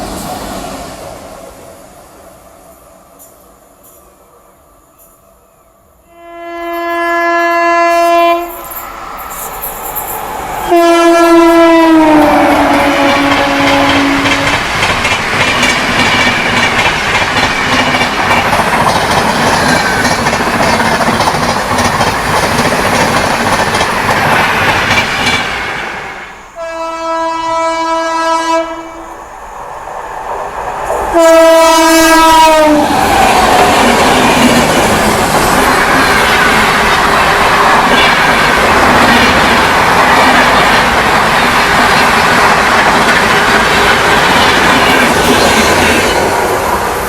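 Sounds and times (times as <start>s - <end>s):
train horn: 6.0s - 8.7s, 10.6s - 14.7s, 26.1s - 29.1s, 31.1s - 32.9s
train wheels clattering: 12.4s - 26.0s, 30.7s - 47.0s.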